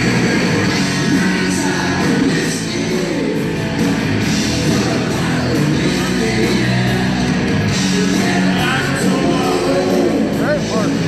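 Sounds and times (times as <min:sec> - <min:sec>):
person singing: 0:00.0 - 0:03.5, 0:04.6 - 0:11.0
drums: 0:00.0 - 0:11.0
live rock band playing: 0:00.0 - 0:11.0.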